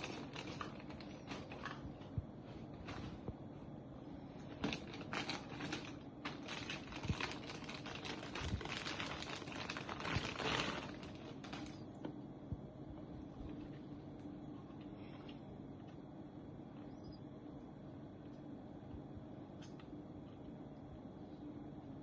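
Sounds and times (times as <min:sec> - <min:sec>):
packaging clicks and rustles: 0:00.0 - 0:02.1, 0:04.6 - 0:11.9.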